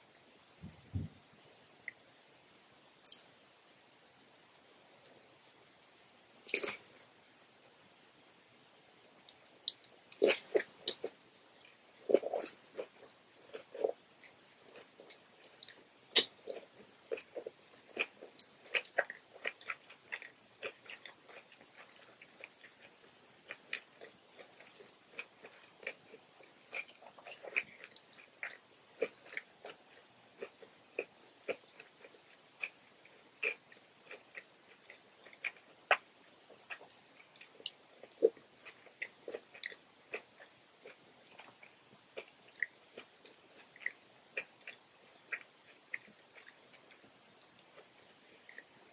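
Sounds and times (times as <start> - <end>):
mouth clicks and smacks: 3.0 - 3.2, 6.5 - 7.0, 9.3 - 11.1, 15.7 - 16.6
person chewing cucumber: 6.5 - 7.0, 9.3 - 48.9.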